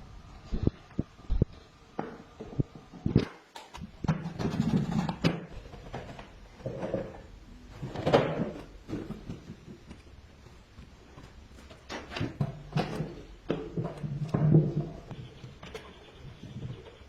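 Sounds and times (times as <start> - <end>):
hard objects knocking and scraping: 1.9 - 10.1, 11.6 - 17.0.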